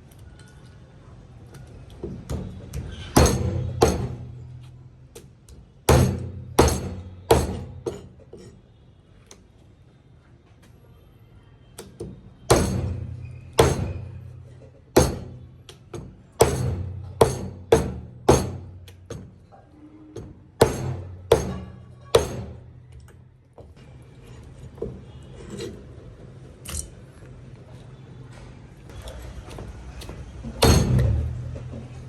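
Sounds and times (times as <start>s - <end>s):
heavy ringing knocks: 2.4s - 4.5s, 5.9s - 8.1s, 12.5s - 15.4s, 16.0s - 19.2s, 20.6s - 22.7s.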